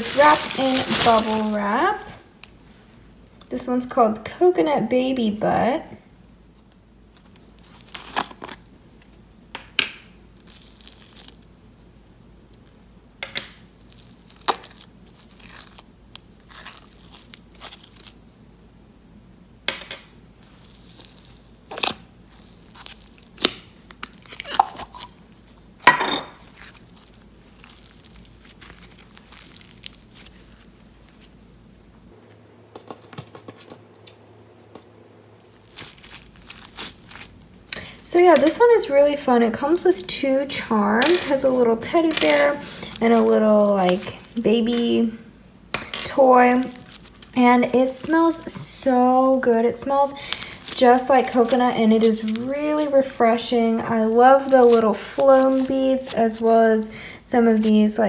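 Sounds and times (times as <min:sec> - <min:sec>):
tape tearing: 0:00.0 - 0:02.6, 0:35.4 - 0:38.8
bubble wrap crinkling: 0:00.0 - 0:03.3, 0:06.5 - 0:09.2, 0:10.2 - 0:11.9, 0:13.6 - 0:18.3, 0:20.3 - 0:40.1, 0:40.8 - 0:45.2, 0:46.0 - 0:58.0.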